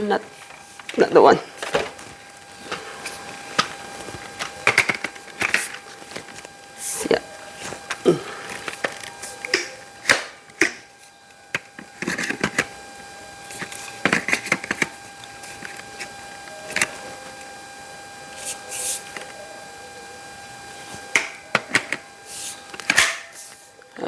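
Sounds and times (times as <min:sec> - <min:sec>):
plastic parts clicking and knocking: 0:02.7 - 0:06.6, 0:11.5 - 0:12.7, 0:13.5 - 0:16.1.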